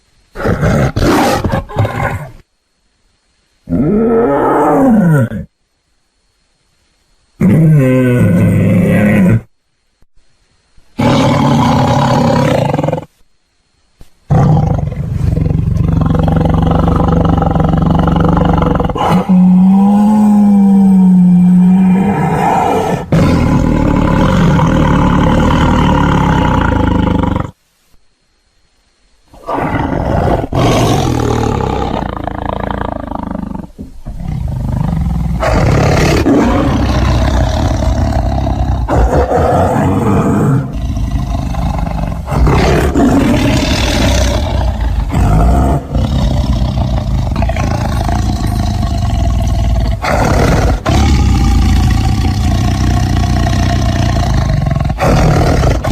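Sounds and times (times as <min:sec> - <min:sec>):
tiger roaring: 0:00.3 - 0:02.4, 0:11.0 - 0:13.1, 0:14.3 - 0:27.6, 0:29.4 - 0:55.9.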